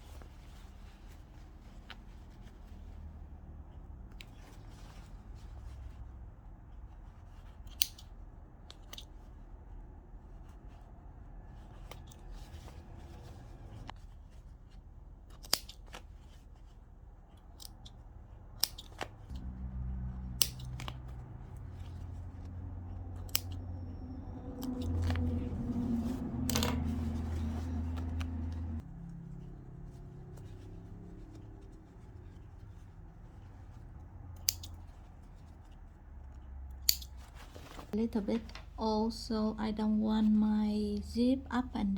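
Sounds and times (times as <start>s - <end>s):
scissors snipping threads: 7.6s - 8.1s, 15.3s - 16.0s, 17.3s - 19.5s, 20.4s - 21.2s, 23.2s - 23.6s, 34.4s - 34.8s, 36.7s - 37.2s
steady low hum: 16.4s - 41.9s.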